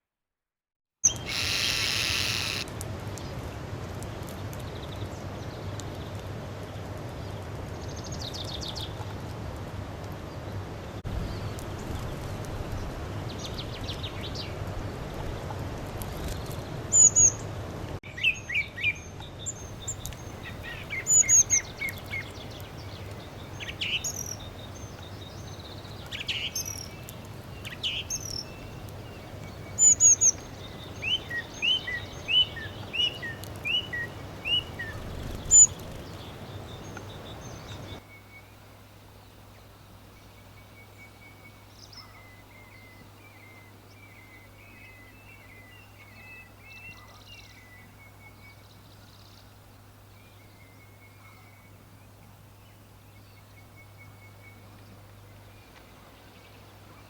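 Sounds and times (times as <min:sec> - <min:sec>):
songbirds chirping and singing: 0:19.6 - 0:38.0.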